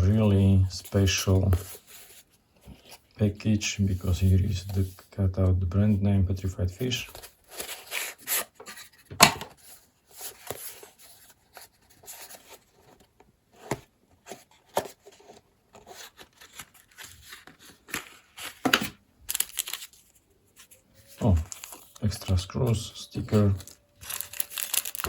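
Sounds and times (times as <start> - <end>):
packaging scraping and rustling: 14.3 - 25.0.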